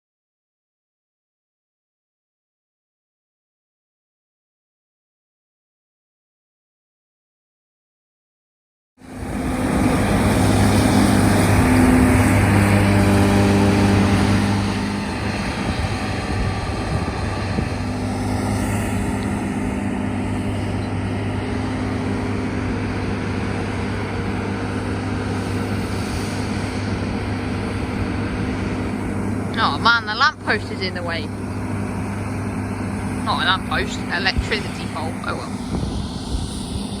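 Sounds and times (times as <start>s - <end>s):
combine harvester engine drone: 9.0s - 37.0s.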